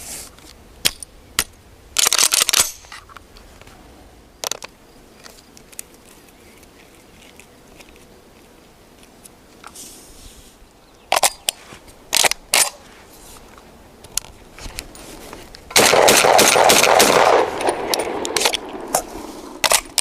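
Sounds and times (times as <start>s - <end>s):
shotgun action clicking and clacking: 0.8s - 2.9s, 11.1s - 12.8s, 15.7s - 19.0s, 19.6s - 20.0s.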